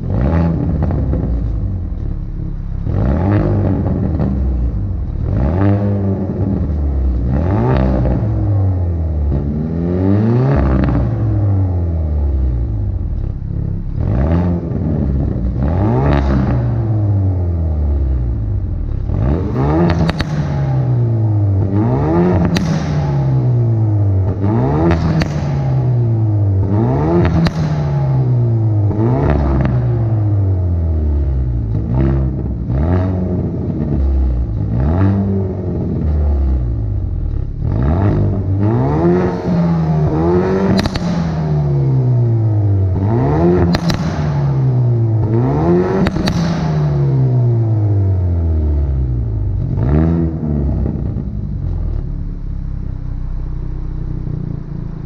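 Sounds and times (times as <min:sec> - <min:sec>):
car engine revving: 0:00.0 - 0:55.0
exhaust pops and crackles: 0:18.7 - 0:23.6, 0:24.2 - 0:25.8, 0:27.1 - 0:27.9, 0:40.0 - 0:41.4, 0:43.4 - 0:47.0.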